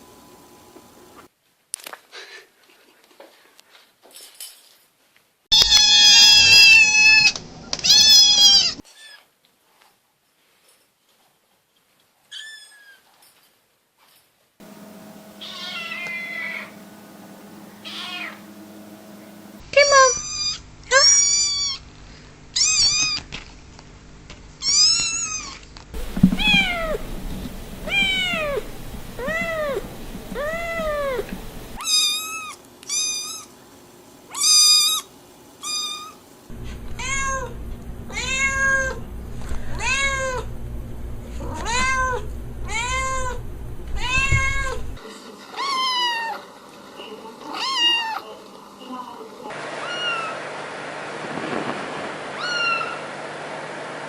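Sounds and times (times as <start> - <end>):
kittens meowing: 5.5 - 9.1, 15.4 - 16.7, 17.8 - 18.4, 26.3 - 27.1, 27.8 - 28.6, 29.2 - 29.8, 30.4 - 33.5, 37.0 - 37.5, 49.8 - 50.4, 52.4 - 53.0.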